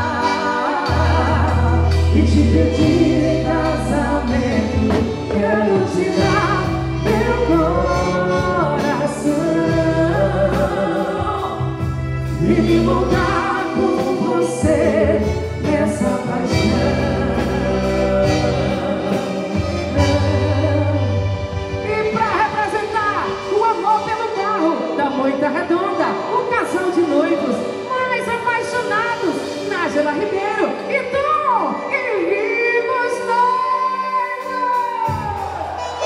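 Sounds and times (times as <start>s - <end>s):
deep bass notes: 0.0s - 23.6s
band music with singing: 0.0s - 36.0s.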